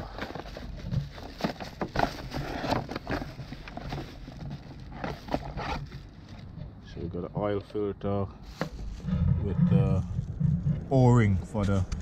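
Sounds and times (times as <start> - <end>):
packaging rustling: 0.0 - 6.6.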